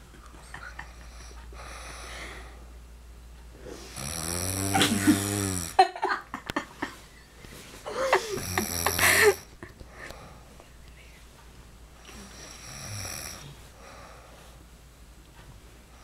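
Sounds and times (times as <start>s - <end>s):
man snoring: 3.9s - 5.8s, 8.3s - 9.4s, 12.1s - 13.5s.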